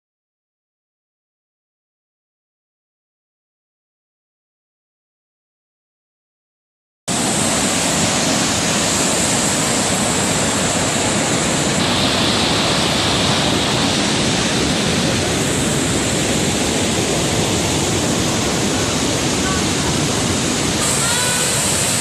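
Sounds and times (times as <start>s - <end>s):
waterfall roaring: 7.1s - 22.0s.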